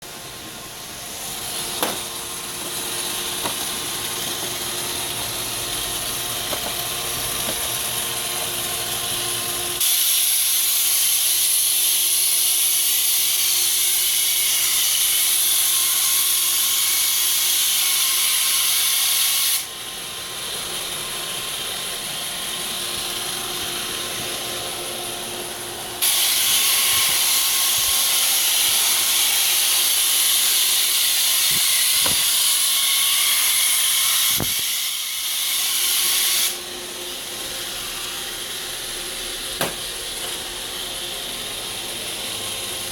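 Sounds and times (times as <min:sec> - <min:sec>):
loud harsh hiss: 0:18.5 - 0:42.9.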